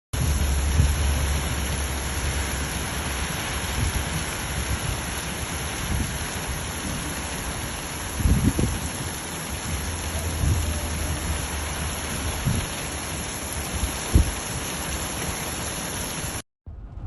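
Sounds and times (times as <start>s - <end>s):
low rumble: 0.2s - 4.1s, 16.6s - 17.0s
steady rain hissing: 0.2s - 16.4s.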